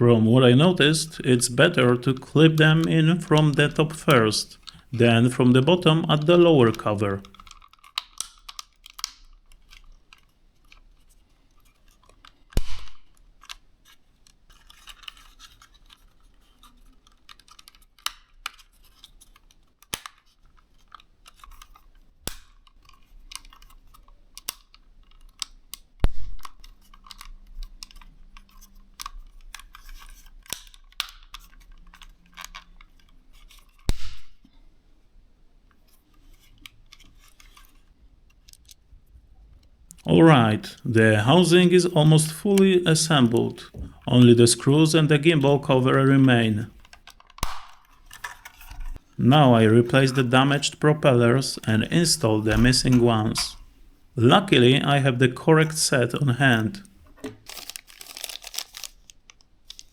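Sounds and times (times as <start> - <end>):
plastic clicks and snaps: 5.6 - 10.9, 11.5 - 34.5.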